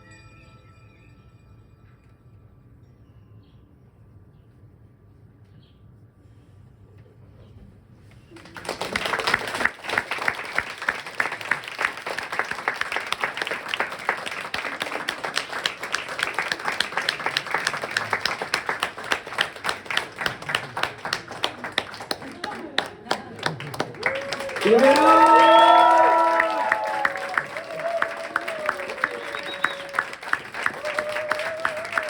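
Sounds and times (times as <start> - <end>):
audience applauding: 8.3 - 32.0.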